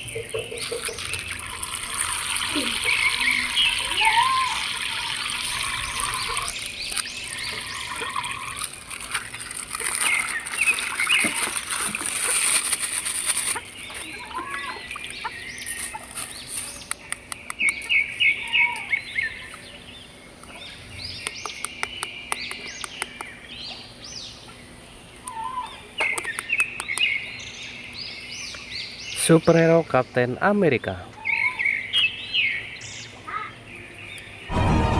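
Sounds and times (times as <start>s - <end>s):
small birds chirping: 0.0s - 12.4s, 13.0s - 34.5s
running water hissing: 0.0s - 15.0s.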